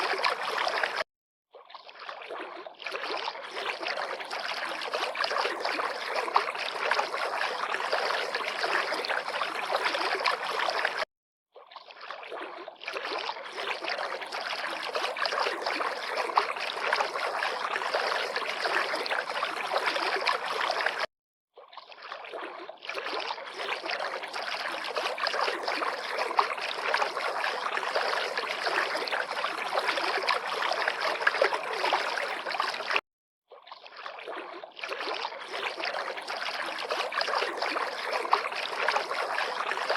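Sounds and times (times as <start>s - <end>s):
river water flowing: 0.0s - 1.0s.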